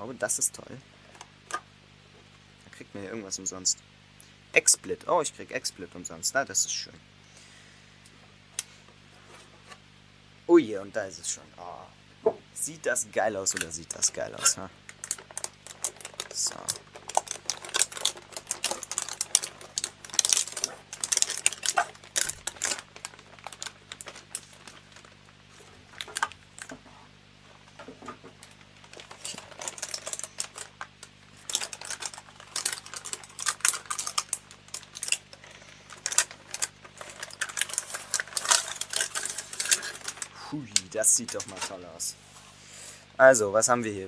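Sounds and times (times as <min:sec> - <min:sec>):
plastic and cardboard crinkling: 0:13.4 - 0:41.9.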